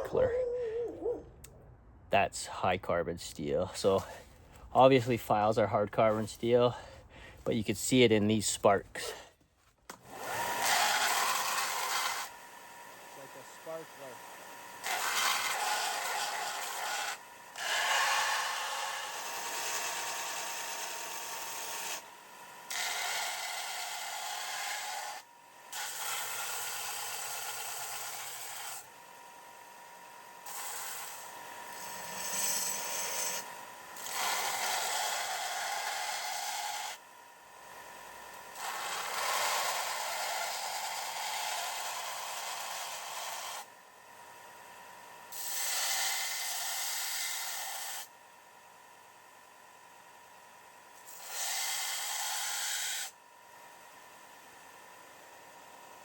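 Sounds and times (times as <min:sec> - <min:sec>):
steel being ground: 0:10.3 - 0:12.4, 0:14.8 - 0:22.1, 0:22.7 - 0:28.9, 0:30.4 - 0:37.0, 0:38.5 - 0:43.7, 0:45.3 - 0:48.1, 0:51.0 - 0:53.1.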